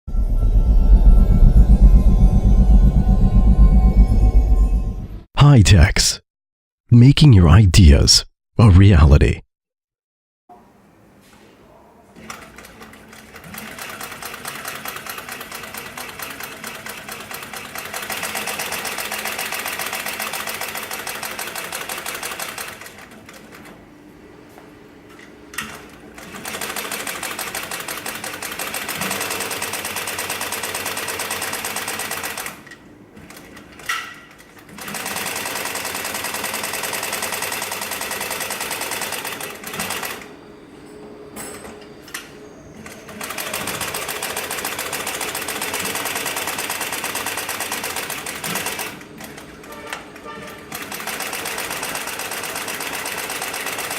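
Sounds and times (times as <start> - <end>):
industrial sewing machine stitching: 12.3 - 23.1, 26.2 - 32.6, 33.3 - 40.2, 42.8 - 49.8, 50.6 - 53.9.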